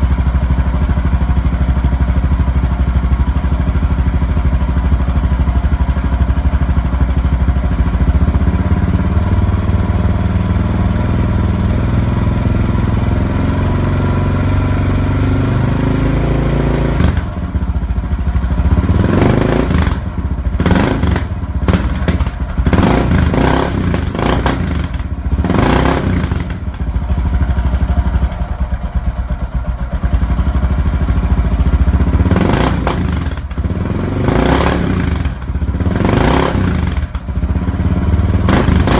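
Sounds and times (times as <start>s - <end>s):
motorcycle engine idling: 0.0s - 38.9s
motorcycle throttle blips: 5.5s - 13.2s, 15.4s - 38.9s.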